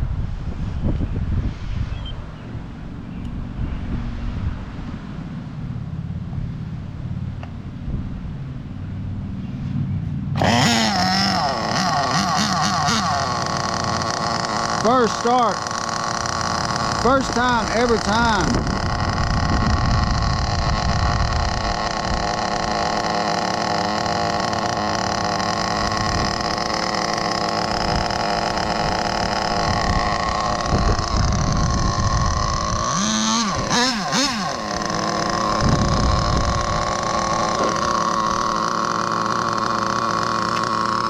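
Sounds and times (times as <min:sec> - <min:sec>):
engine throttle blips: 0:01.8 - 0:41.0
small nitro engine idling: 0:10.4 - 0:41.0.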